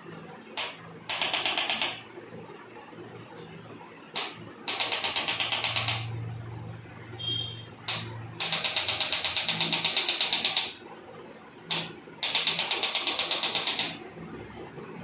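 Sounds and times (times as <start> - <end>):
percussion massager rattling: 4.2 - 6.1, 7.9 - 10.8, 11.7 - 14.0.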